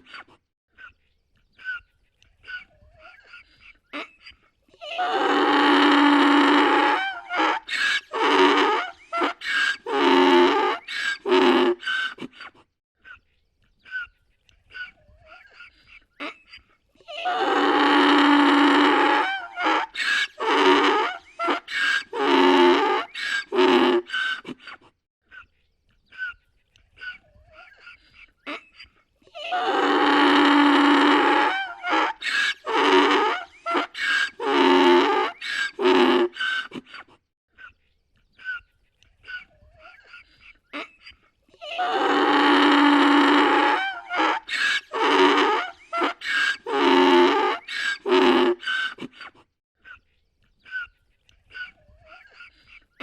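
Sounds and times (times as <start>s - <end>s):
donkey braying: 4.8s - 12.3s, 17.0s - 24.6s, 29.3s - 37.0s, 40.8s - 49.3s.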